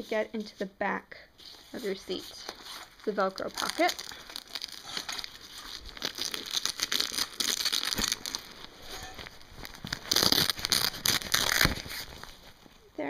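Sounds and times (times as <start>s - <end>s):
fabric rustling: 1.4s - 13.0s
velcro ripping open: 2.4s - 12.6s.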